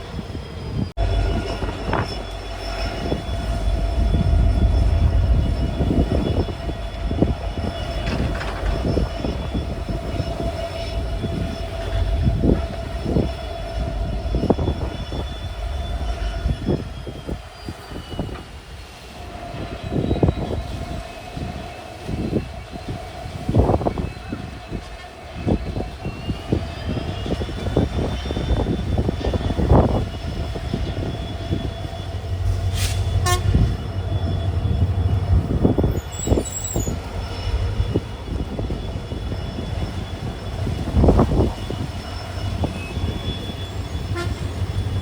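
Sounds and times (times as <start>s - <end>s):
locomotive rumble and engine whine: 0.0s - 45.0s
wheels clanking on track: 1.0s - 45.0s.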